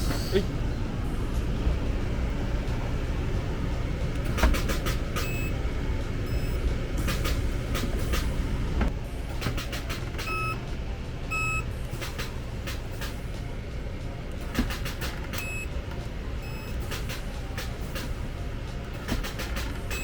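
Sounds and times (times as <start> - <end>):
steady low hum: 0.0 - 20.0
short electronic beeps: 5.2 - 5.5, 11.3 - 11.6.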